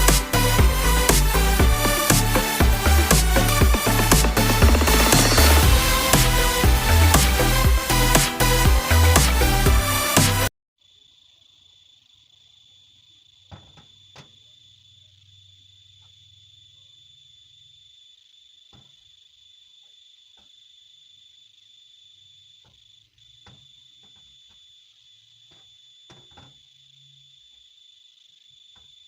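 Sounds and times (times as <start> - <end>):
high-pitched whine: 0.0 - 10.5.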